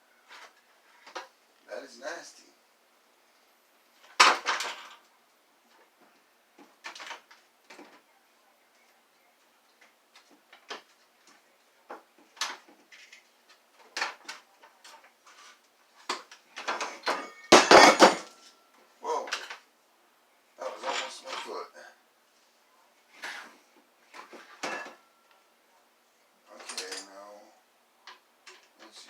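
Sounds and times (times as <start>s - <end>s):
vacuum parts clicking and knocking: 16.0s - 18.4s.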